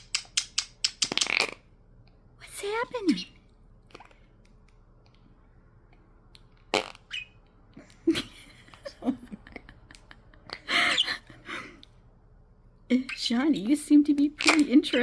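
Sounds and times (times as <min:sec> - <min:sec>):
putty fart-like squelches: 0:01.0 - 0:01.7, 0:06.6 - 0:07.3.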